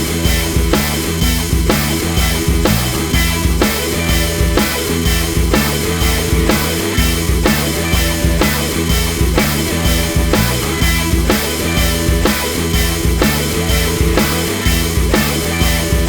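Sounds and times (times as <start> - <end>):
rock music with drums and guitar: 0.0 - 16.0.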